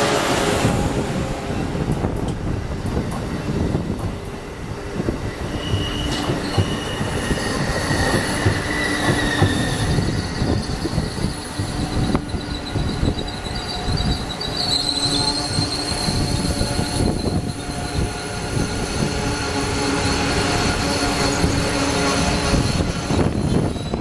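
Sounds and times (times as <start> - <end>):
train wheels rumbling and clattering: 0.0 - 24.0
wheel squeal: 5.4 - 19.0, 20.7 - 24.0.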